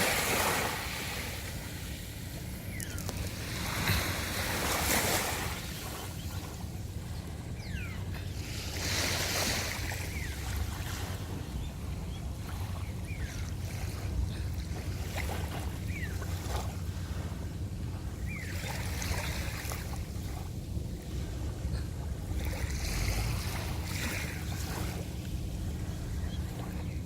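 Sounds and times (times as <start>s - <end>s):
water rushing and splashing: 0.0s - 6.8s, 22.3s - 25.8s
boat engine droning: 0.0s - 27.0s.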